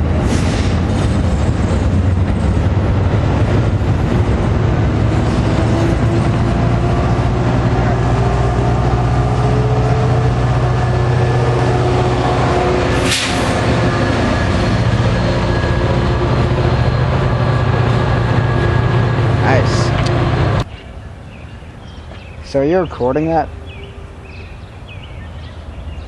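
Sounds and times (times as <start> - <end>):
diesel locomotive drone: 0.0 - 26.0
rising engine tones: 1.1 - 20.7.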